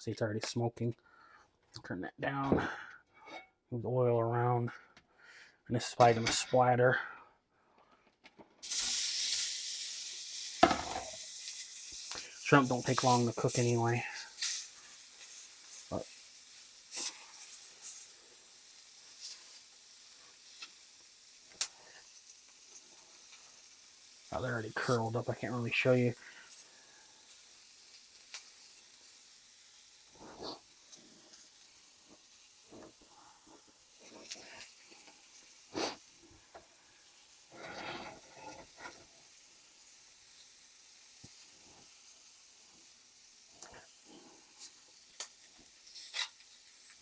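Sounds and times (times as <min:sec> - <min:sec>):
shrimp sizzling in hot oil: 0:08.6 - 0:47.0
clattering and scraping in a pan: 0:10.6 - 0:18.1, 0:37.5 - 0:39.2, 0:44.6 - 0:47.0.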